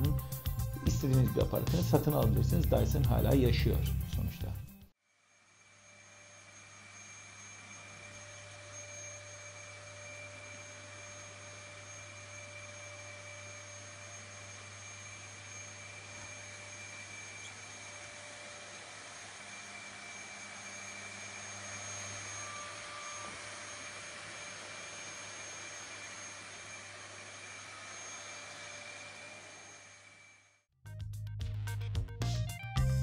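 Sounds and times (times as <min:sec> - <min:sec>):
vacuum cleaner running: 0:05.4 - 0:30.6.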